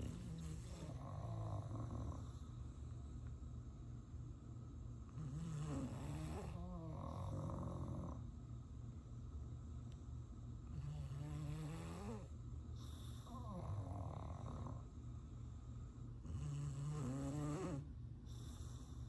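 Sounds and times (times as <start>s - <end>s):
dog snoring: 0.0s - 2.6s, 5.1s - 8.3s, 10.7s - 14.9s, 16.2s - 19.0s.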